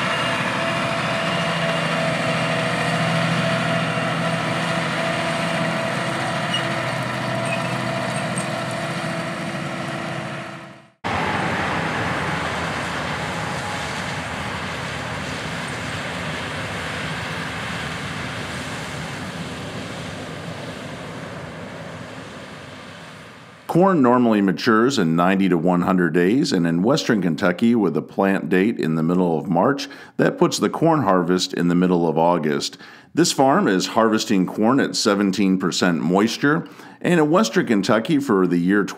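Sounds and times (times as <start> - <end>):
diesel farm machinery running: 0.0 - 24.0, 36.5 - 38.0
combine harvester rushing: 0.0 - 24.8.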